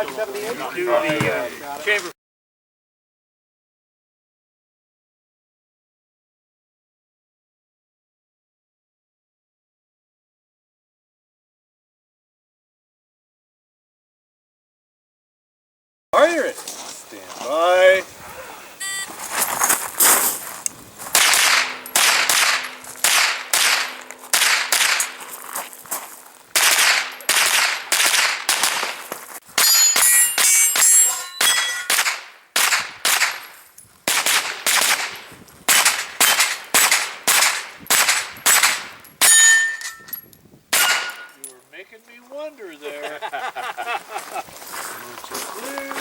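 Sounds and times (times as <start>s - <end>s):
carbine gunshots: 21.1s - 25.4s, 26.5s - 40.0s, 40.7s - 41.5s
steel targets ringing: 21.2s - 25.4s, 26.6s - 33.6s, 34.4s - 40.2s, 40.8s - 41.5s.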